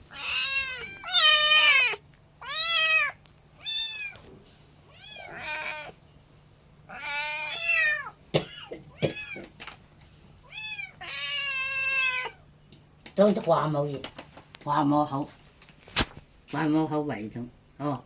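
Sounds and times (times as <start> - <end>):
kitten meowing: 0.1 - 4.3, 4.9 - 5.9, 6.9 - 8.2, 10.5 - 12.4.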